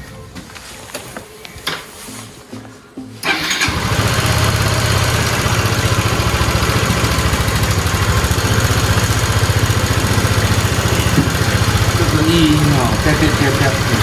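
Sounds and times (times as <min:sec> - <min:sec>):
scooter engine starting and idling: 0:03.2 - 0:14.0.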